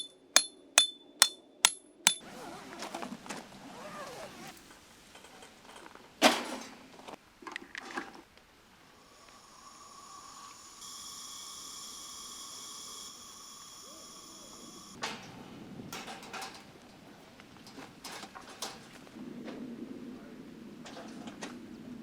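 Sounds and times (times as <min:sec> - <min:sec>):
high-pitched electric whine: 0:09.4 - 0:15.0.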